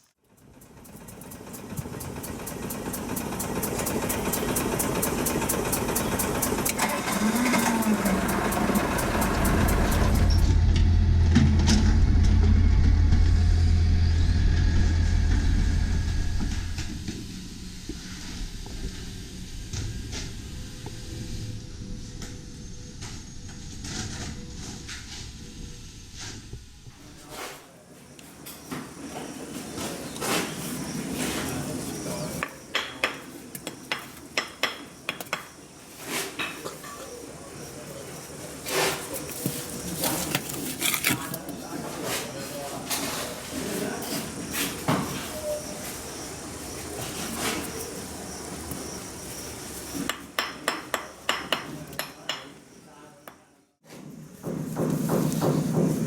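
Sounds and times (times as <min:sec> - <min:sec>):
heavy engine humming: 0:00.4 - 0:27.0
indistinct voices: 0:03.8 - 0:17.3
scraping and rustling: 0:38.6 - 0:46.0.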